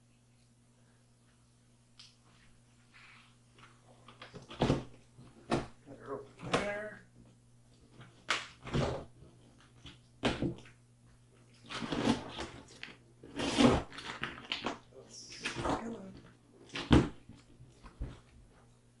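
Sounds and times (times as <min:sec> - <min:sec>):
cardboard rustling and scraping: 0:11.6 - 0:14.5.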